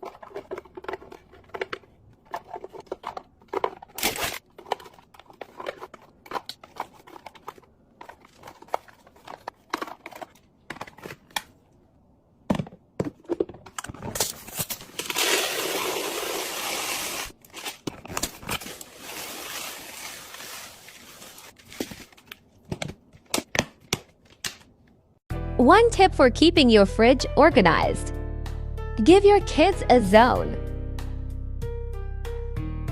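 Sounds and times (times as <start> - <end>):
packaging crinkling and tearing: 0.0 - 11.4, 14.0 - 22.5
clicks and taps of items set down: 12.5 - 14.2.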